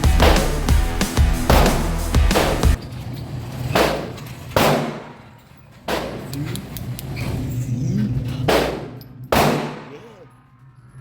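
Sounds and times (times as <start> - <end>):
handgun shots: 3.8 - 5.1, 8.5 - 9.9.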